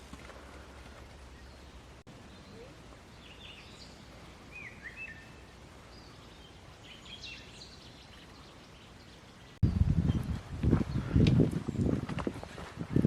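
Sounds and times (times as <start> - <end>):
steady low background noise: 0.0 - 9.6.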